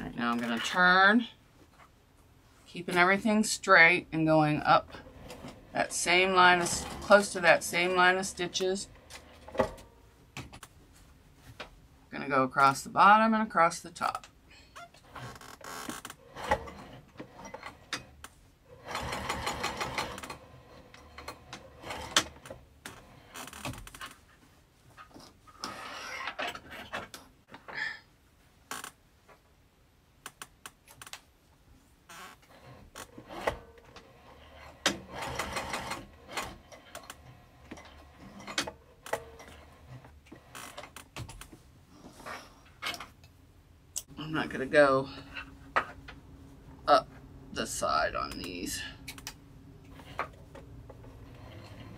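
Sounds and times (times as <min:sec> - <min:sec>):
sewing machine stitching: 0:04.9 - 0:09.9, 0:15.0 - 0:24.0, 0:32.1 - 0:41.1, 0:49.9 - 0:51.9.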